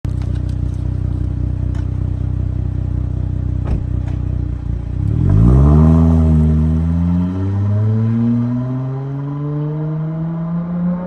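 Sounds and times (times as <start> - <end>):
car engine idling: 0.0 - 7.8.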